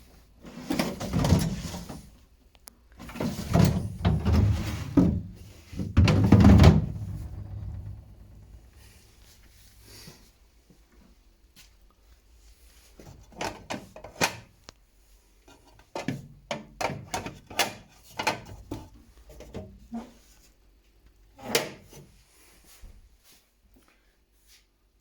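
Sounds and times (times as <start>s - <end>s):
refrigerator drawers knocking: 3.0s - 9.0s.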